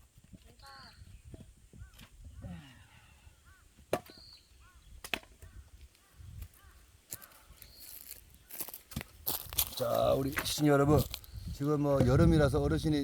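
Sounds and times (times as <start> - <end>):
faint bird calls: 0.5 - 8.7
axe chopping firewood: 3.8 - 4.2, 5.0 - 5.5.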